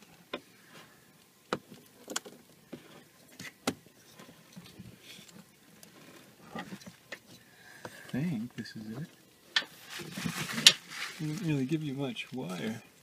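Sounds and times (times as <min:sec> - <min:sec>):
wire and plastic clicks and rustles: 0:01.2 - 0:11.6.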